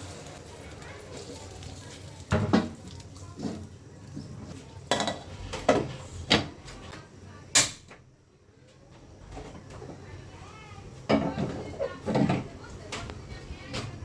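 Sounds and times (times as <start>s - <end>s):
cookware and utensils knocking: 4.9s - 6.5s, 11.1s - 12.5s.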